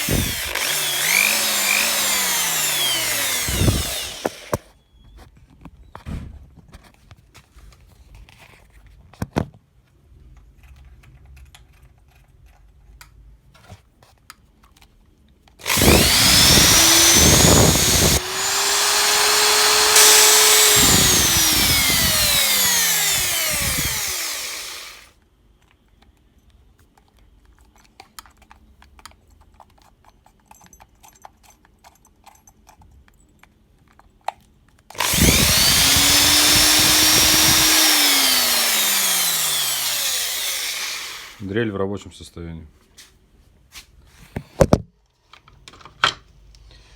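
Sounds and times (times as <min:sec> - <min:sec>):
electric drill whine: 0:00.0 - 0:04.7, 0:15.6 - 0:25.1, 0:35.0 - 0:41.4.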